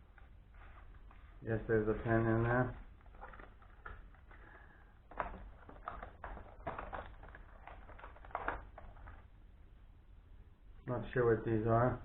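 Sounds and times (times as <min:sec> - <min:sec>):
packaging rustling: 0:00.0 - 0:09.3.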